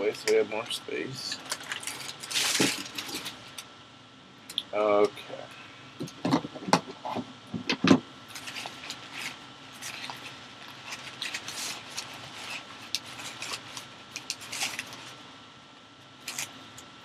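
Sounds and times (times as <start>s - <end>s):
packing paper rustling: 1.3s - 3.6s, 8.3s - 15.2s, 16.2s - 16.7s.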